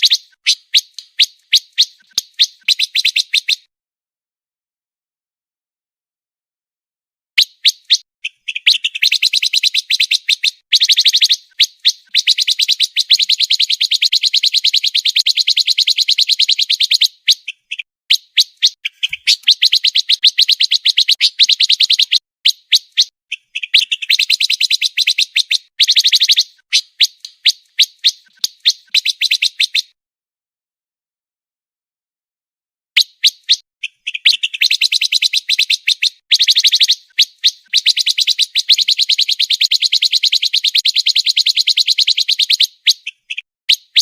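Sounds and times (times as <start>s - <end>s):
songbird singing fast trills: 0.0s - 3.7s, 7.4s - 30.0s, 33.0s - 44.0s.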